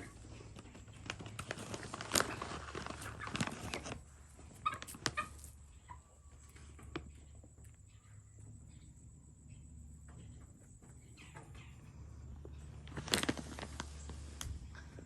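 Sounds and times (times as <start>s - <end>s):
chickens pecking at food: 0.0s - 8.8s.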